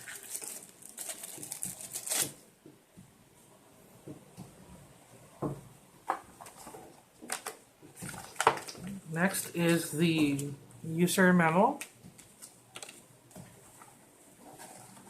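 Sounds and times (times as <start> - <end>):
packaging rustling and crinkling: 0.0 - 2.4, 6.4 - 9.4, 11.8 - 15.0.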